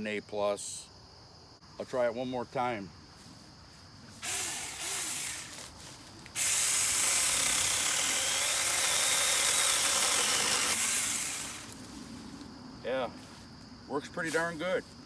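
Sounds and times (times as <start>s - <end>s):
mini chainsaw cutting branch: 4.2s - 11.9s.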